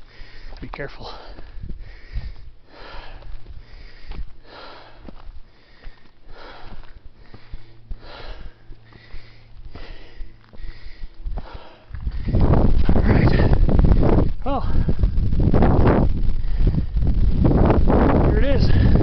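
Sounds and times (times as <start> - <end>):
person breathing hard: 0.0 - 15.3, 16.2 - 17.3, 18.7 - 19.0
faint footfalls: 0.4 - 13.0.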